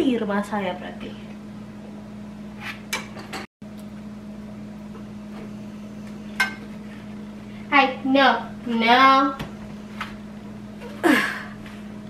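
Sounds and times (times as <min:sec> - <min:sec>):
steady low hum: 0:00.0 - 0:12.0
kitchenware clinking: 0:02.9 - 0:03.5, 0:06.4 - 0:06.7.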